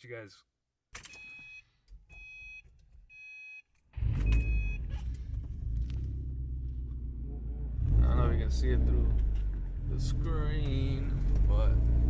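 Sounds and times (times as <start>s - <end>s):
car warning chime beeps: 1.2s - 5.1s
car engine starting and running: 3.9s - 12.0s.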